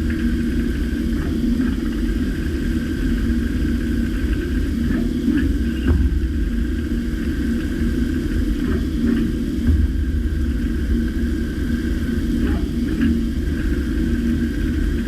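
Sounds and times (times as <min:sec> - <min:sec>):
milling machine hum: 0:00.0 - 0:15.0.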